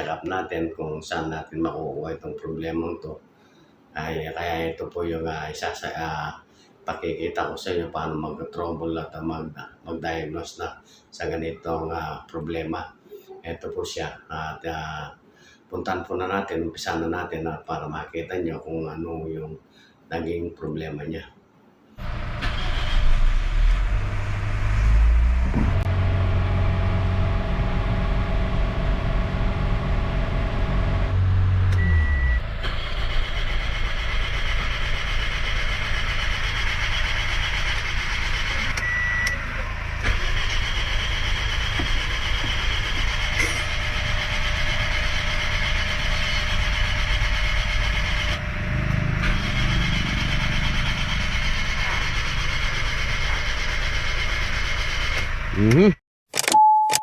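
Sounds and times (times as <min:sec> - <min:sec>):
car engine idling: 0:25.2 - 0:55.9.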